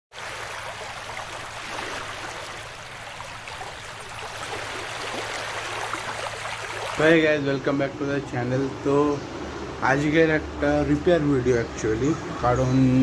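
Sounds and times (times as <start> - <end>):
water trickling and splashing: 0.1 - 7.8.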